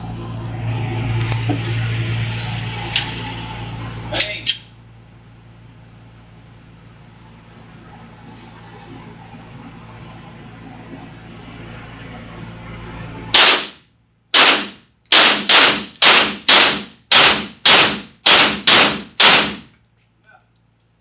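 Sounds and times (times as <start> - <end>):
pistol shots: 13.4 - 19.7.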